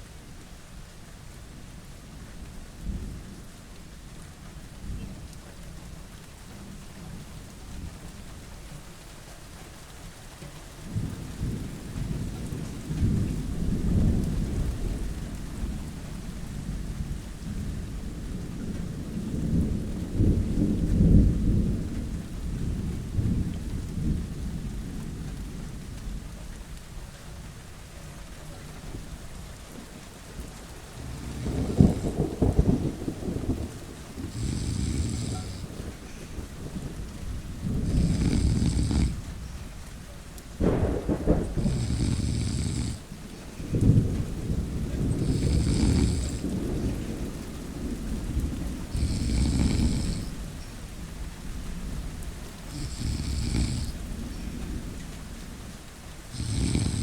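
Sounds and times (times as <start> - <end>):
steady rain: 0.0 - 57.0
rolling thunder: 10.9 - 26.4, 30.2 - 57.0.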